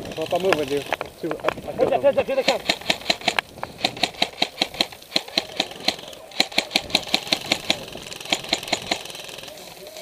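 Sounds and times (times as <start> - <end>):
airsoft rifle fire: 2.4 - 9.5.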